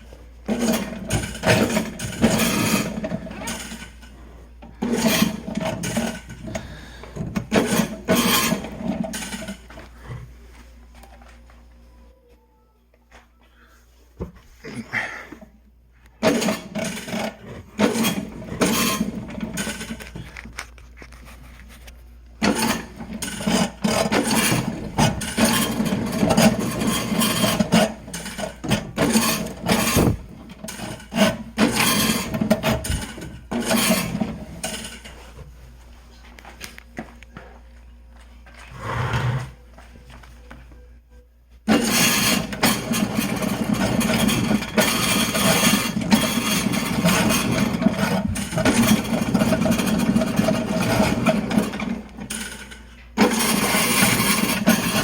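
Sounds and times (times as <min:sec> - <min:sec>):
drain auger cable scraping: 0:00.4 - 0:09.8, 0:16.2 - 0:21.8, 0:22.4 - 0:35.2, 0:41.7 - 0:55.0.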